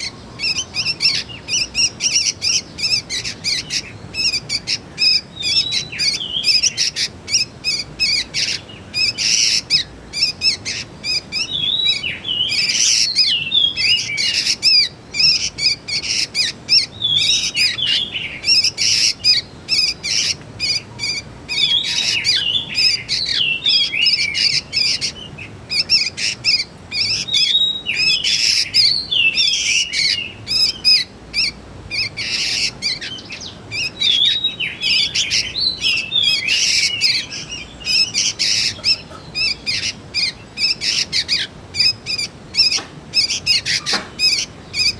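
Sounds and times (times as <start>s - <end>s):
young birds chirping: 0.0s - 44.9s.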